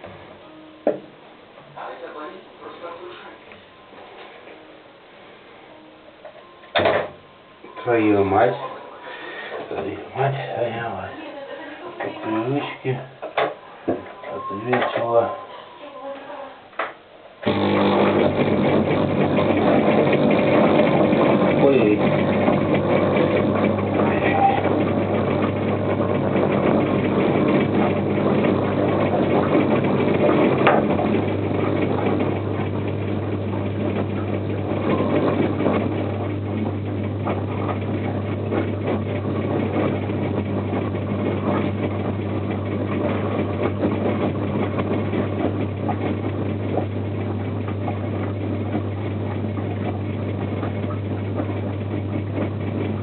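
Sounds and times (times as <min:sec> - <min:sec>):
electric air compressor humming: 0:17.4 - 0:40.7.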